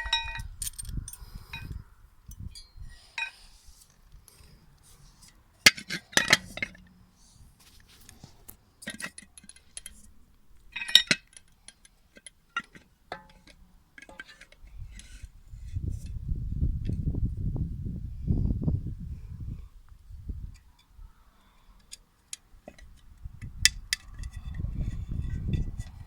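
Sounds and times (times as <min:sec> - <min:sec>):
metallic clinks and knocks: 0:00.0 - 0:03.4, 0:08.8 - 0:15.3.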